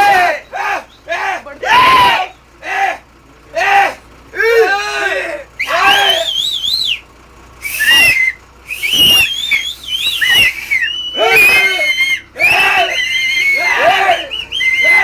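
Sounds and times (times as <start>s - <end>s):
people whistling warbling: 0.0s - 2.6s, 5.5s - 15.0s
person shouting: 0.0s - 6.3s, 11.1s - 15.0s.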